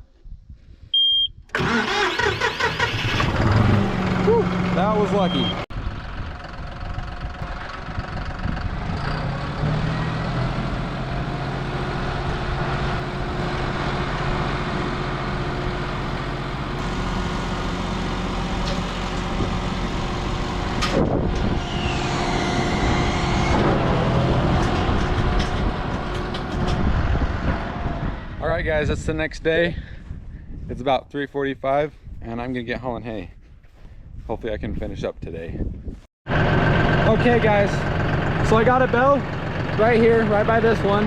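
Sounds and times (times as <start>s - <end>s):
tractor engine running: 1.5s - 28.3s, 36.3s - 41.0s.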